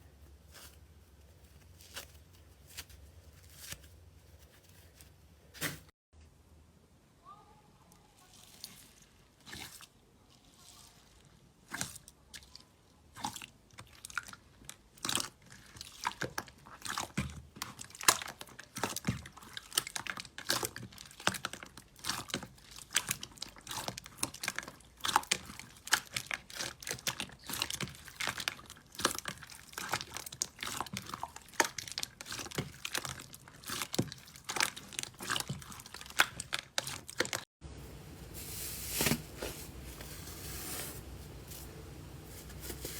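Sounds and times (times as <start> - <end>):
slime crackling and popping: 15.0 - 37.4.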